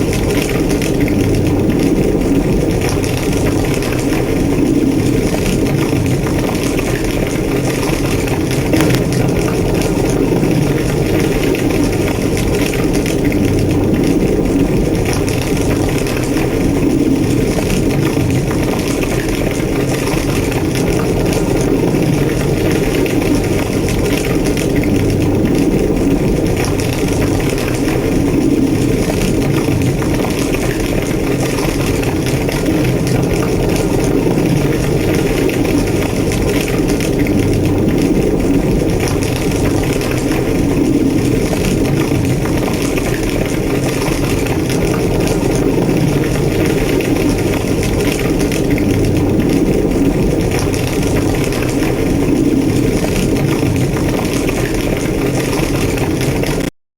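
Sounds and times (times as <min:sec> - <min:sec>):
flames roaring and crackling: 0:08.6 - 0:18.6.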